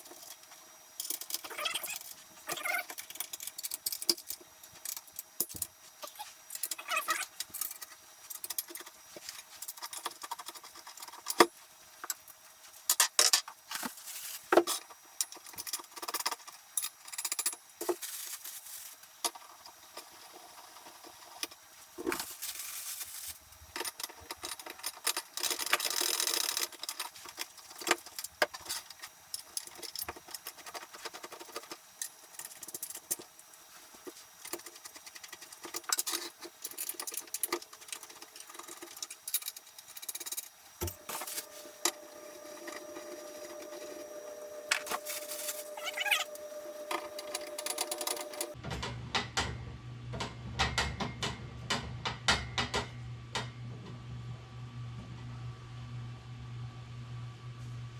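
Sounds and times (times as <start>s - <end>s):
steady low hum: 40.7s - 48.6s.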